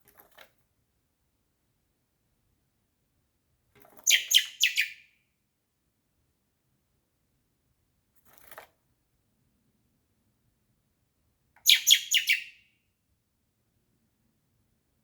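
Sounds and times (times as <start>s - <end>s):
baby bird chirping: 4.0s - 5.1s, 11.6s - 12.6s.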